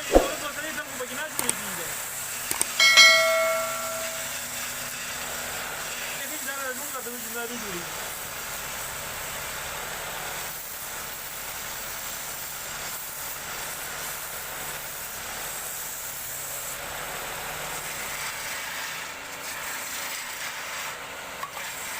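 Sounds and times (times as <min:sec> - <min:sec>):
tool hissing on spinning wood: 0:06.2 - 0:16.8.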